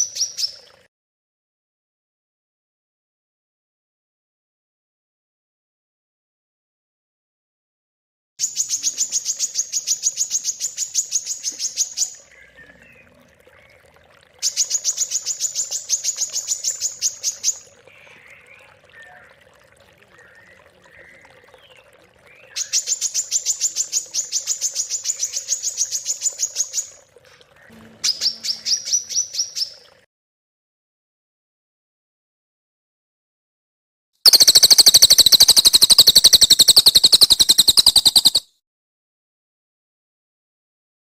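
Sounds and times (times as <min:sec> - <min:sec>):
soft bird chirps: 0:08.4 - 0:29.9, 0:34.3 - 0:38.4
songbird rapid trill: 0:34.3 - 0:38.4.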